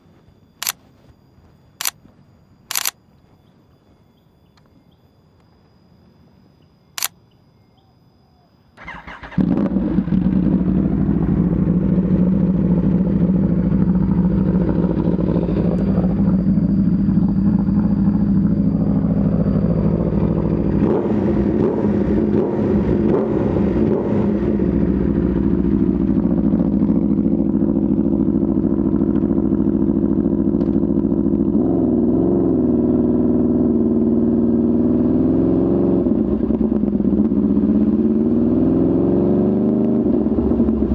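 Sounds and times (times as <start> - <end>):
motorcycle engine idling: 8.8 - 31.6.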